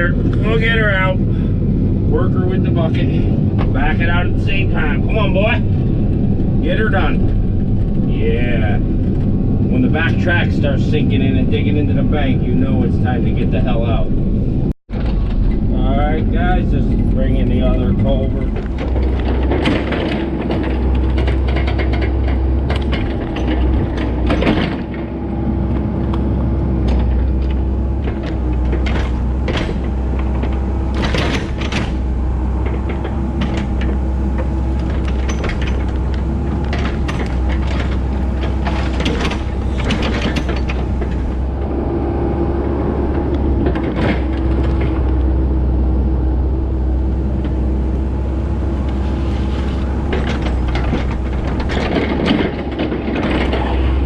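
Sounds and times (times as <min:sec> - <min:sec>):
excavator diesel engine running: 0:00.0 - 0:54.0
machine clanks and knocks: 0:14.9 - 0:41.8, 0:43.0 - 0:45.3, 0:49.9 - 0:54.0.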